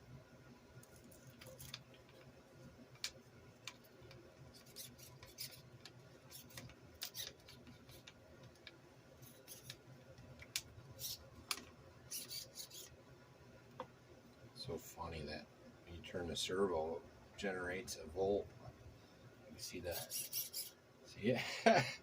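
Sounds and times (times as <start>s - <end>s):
low steady hum: 0.0s - 22.0s
faint clicks of parts: 2.9s - 12.9s.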